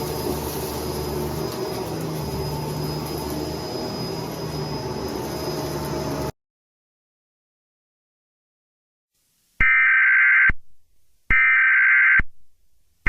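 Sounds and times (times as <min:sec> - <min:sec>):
vacuum cleaner running: 0:00.0 - 0:06.3.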